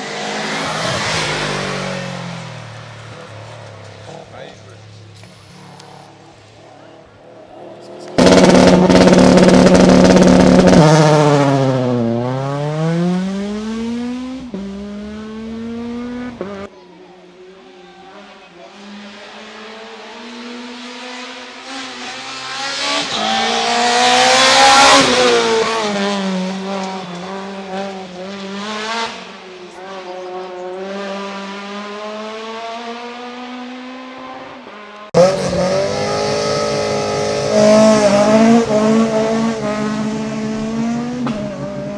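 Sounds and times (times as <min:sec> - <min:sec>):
car passing by: 0:00.0 - 0:08.2
rally cars at full throttle: 0:00.0 - 0:41.9.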